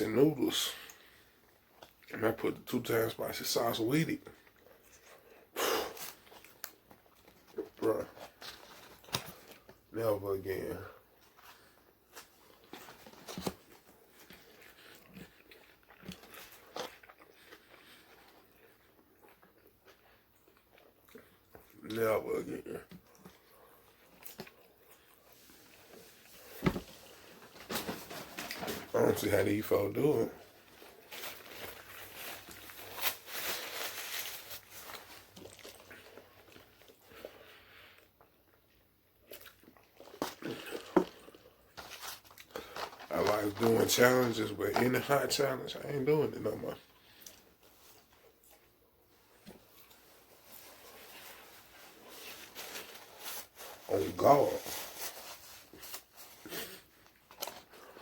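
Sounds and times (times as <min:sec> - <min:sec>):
person chewing food: 0:04.3 - 0:09.9, 0:11.0 - 0:21.9, 0:22.8 - 0:27.5, 0:34.5 - 0:43.6, 0:46.8 - 0:53.0, 0:56.4 - 0:58.0.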